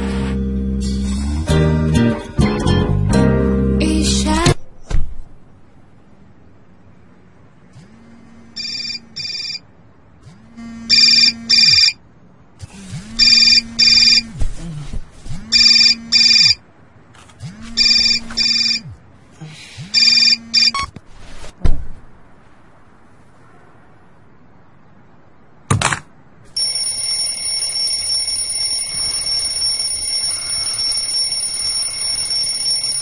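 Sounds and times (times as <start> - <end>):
alarm clock beeping: 8.6 - 9.6, 10.9 - 12.0, 13.2 - 14.2, 15.5 - 16.6, 17.8 - 18.8, 20.0 - 20.9, 26.6 - 33.0
thud: 21.6 - 22.1.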